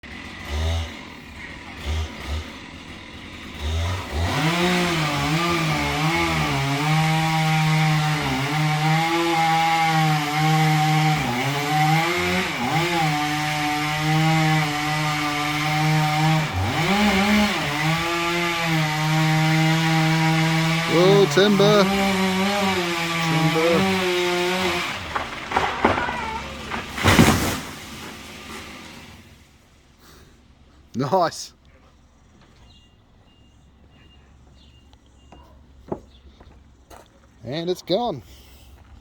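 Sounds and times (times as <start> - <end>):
chainsaw cutting wood: 0.0 - 29.8.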